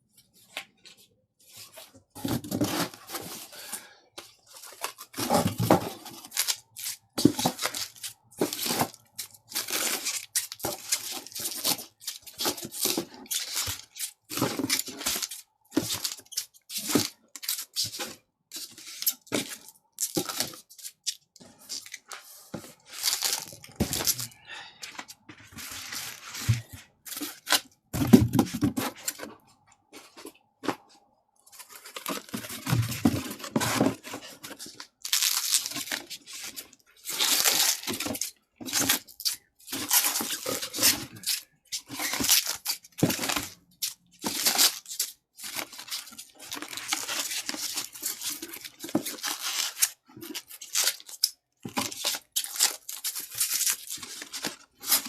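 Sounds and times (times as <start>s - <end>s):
rustling and tearing: 4.4s - 24.4s, 31.4s - 55.0s.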